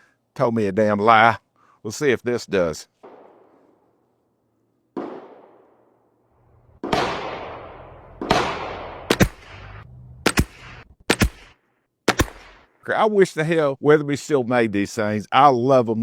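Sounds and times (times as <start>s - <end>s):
rifle shots with echo: 3.0s - 4.0s, 5.0s - 6.1s, 6.8s - 12.7s
sharp short cracks: 6.8s - 12.8s.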